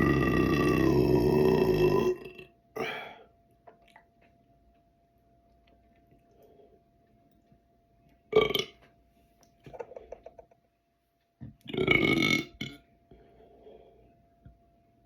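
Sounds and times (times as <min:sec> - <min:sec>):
person burping: 0:00.0 - 0:03.2, 0:08.3 - 0:08.8, 0:11.6 - 0:12.9.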